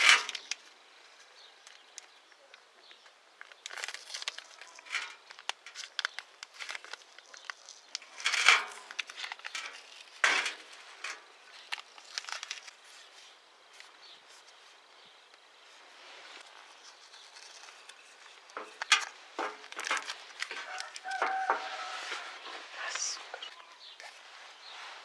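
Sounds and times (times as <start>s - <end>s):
rough scraping and rubbing: 15.6s - 25.0s.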